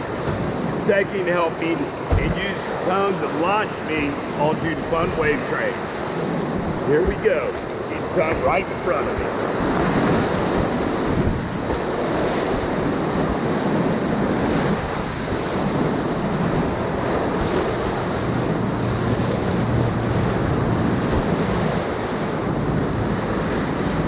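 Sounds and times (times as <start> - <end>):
whitewater rushing and splashing: 0.0 - 24.0
wind noise on microphone: 5.8 - 24.0.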